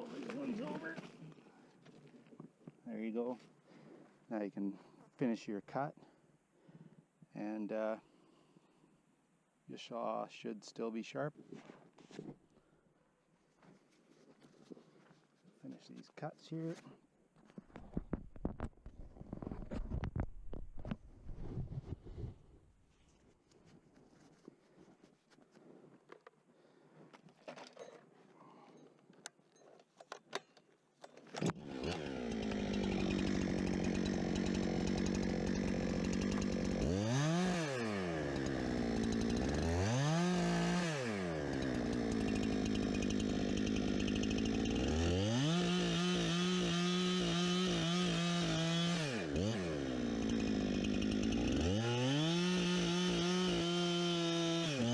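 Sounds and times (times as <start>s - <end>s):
chainsaw cutting logs: 0.0s - 1.3s, 30.1s - 54.9s.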